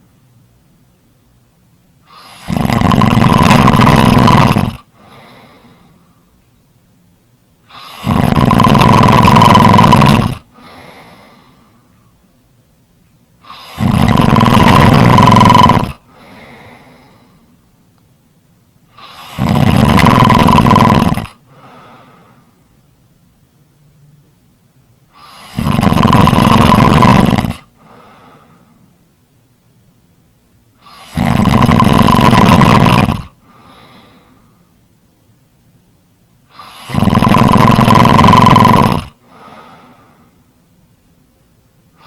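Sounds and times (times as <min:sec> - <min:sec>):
loud snoring: 0:02.1 - 0:05.6, 0:07.7 - 0:11.2, 0:13.4 - 0:17.2, 0:18.9 - 0:21.9, 0:25.1 - 0:27.7, 0:30.8 - 0:33.4, 0:36.5 - 0:39.2.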